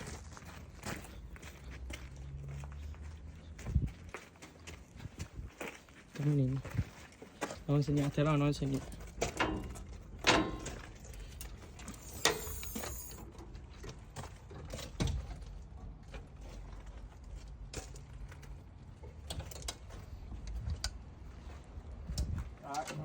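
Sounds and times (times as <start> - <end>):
hardware clicking and clunking: 8.6 - 16.7, 17.7 - 21.1.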